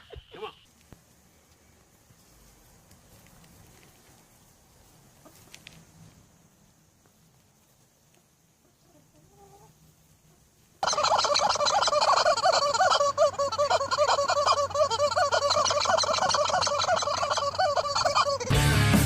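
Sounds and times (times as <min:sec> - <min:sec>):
turkeys gobbling: 0:10.8 - 0:18.6.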